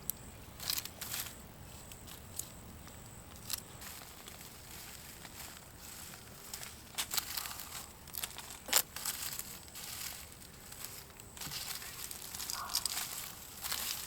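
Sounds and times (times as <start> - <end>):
debris and wrappers rustling: 3.3 - 14.0.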